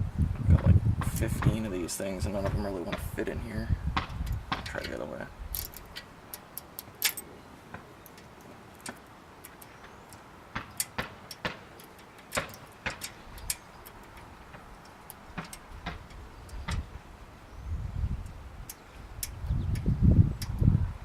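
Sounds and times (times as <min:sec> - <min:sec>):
lock pick metal clicks: 0:04.2 - 0:07.3, 0:08.0 - 0:16.8.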